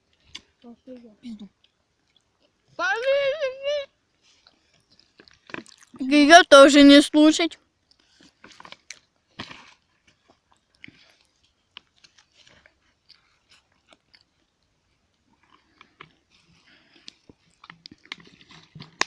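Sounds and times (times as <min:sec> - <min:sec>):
crunching and chewing snack food: 0:01.5 - 0:02.8, 0:04.2 - 0:06.0, 0:07.6 - 0:19.0.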